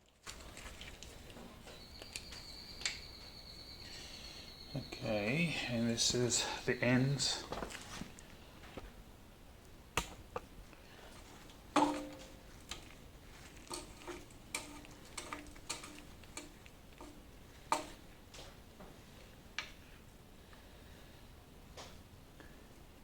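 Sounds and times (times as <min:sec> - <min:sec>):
ringing metal clank: 0:11.8 - 0:12.5
metal tools clicking and clinking: 0:11.8 - 0:13.0, 0:13.6 - 0:18.0.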